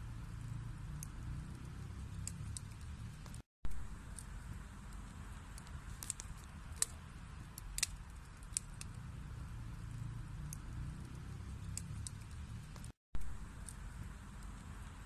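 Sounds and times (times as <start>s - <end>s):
burning logs crackling: 0.0s - 15.0s
fire flames rumbling: 0.0s - 15.0s.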